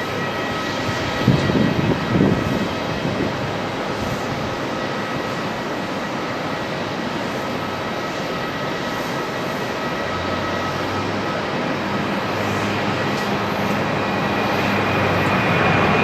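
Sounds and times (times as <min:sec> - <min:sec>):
jet engines at takeoff power: 0:00.0 - 0:16.0.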